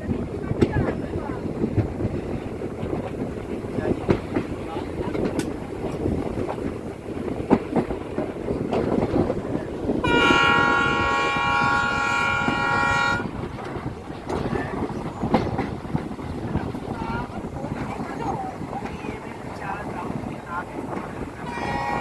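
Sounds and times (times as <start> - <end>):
train wheels rumbling on track: 0.0 - 22.0
locomotive horn chord: 10.0 - 13.3, 21.5 - 22.0.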